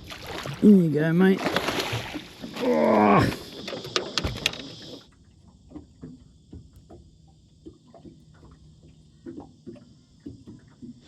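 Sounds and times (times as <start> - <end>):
insects droning: 0.0 - 11.0
faint ticks and taps: 5.7 - 11.0.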